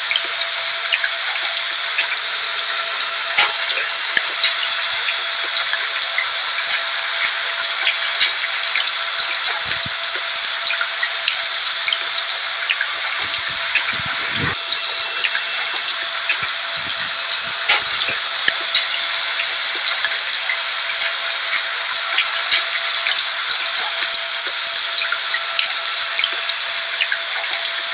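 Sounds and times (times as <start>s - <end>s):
steady rain hiss: 2.2s - 21.5s
vacuum cleaner motor: 5.7s - 11.3s, 12.0s - 23.4s.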